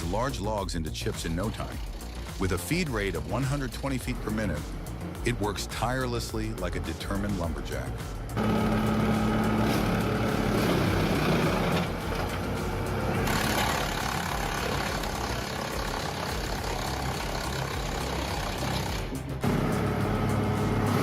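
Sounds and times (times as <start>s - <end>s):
engine hum: 1.0s - 21.0s
wood chipper chipping branches: 8.4s - 21.0s.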